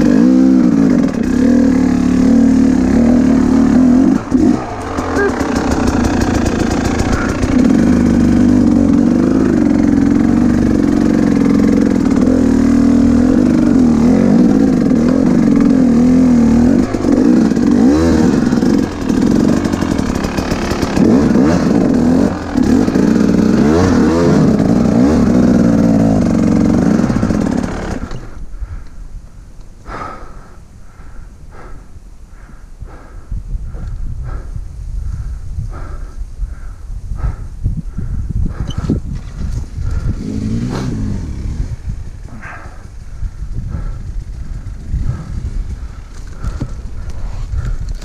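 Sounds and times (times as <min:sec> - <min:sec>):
dirt bike engine revving: 0:00.0 - 0:28.4, 0:38.6 - 0:47.7
rider heavy breathing: 0:00.0 - 0:48.0.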